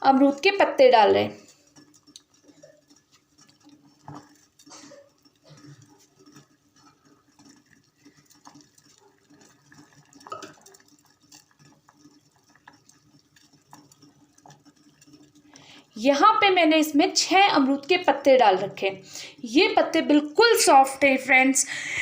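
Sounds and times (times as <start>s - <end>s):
leaves tapping into a pan: 1.4s - 18.1s.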